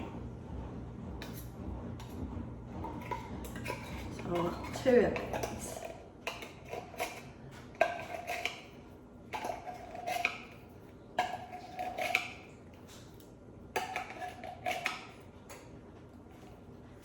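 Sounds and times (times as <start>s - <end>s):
utensil scraping inside metal can: 2.8s - 12.6s.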